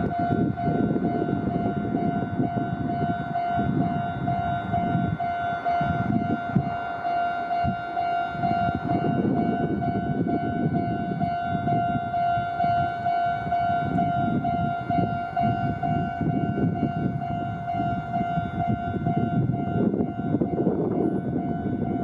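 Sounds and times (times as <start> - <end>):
electronic crossing bell dinging: 0.0 - 22.0.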